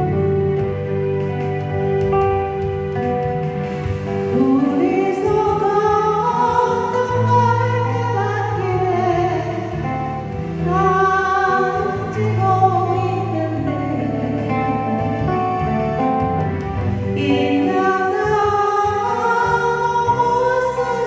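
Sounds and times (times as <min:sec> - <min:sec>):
recorded backing track: 0:00.0 - 0:21.0
person singing: 0:04.1 - 0:16.0, 0:17.1 - 0:21.0.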